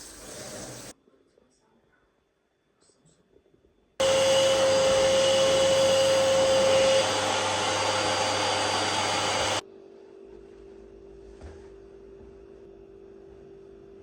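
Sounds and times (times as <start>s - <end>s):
appliance motor whining hum: 4.0s - 9.6s.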